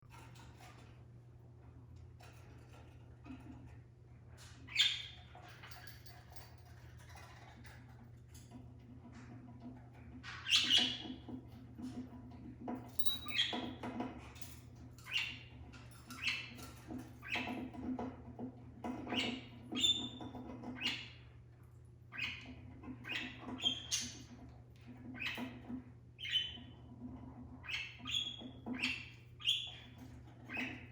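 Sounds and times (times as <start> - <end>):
budgerigars chirping and squawking: 10.2 - 12.0, 15.0 - 18.1, 18.8 - 21.4, 22.1 - 30.9.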